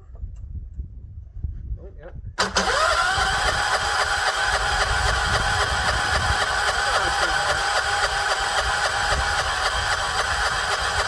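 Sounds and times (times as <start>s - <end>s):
engine starter cranking: 2.4s - 11.0s.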